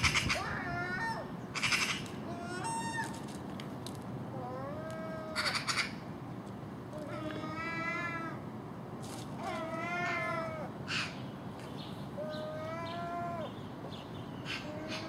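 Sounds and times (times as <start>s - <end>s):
gulls mewing calls: 0.0s - 3.3s, 4.3s - 6.1s, 9.4s - 11.3s, 12.1s - 15.0s.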